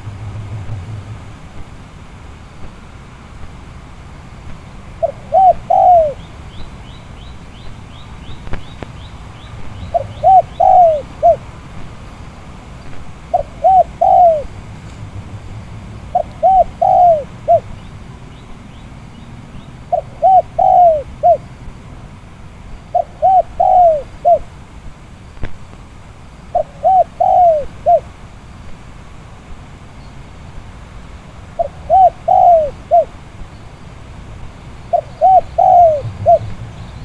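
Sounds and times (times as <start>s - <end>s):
low wind rumble: 0.0s - 29.8s, 30.5s - 37.0s
dove cooing: 5.0s - 6.3s, 9.6s - 11.7s, 13.1s - 18.0s, 19.6s - 21.6s, 22.9s - 24.6s, 26.5s - 28.2s, 31.5s - 33.2s, 34.8s - 37.0s.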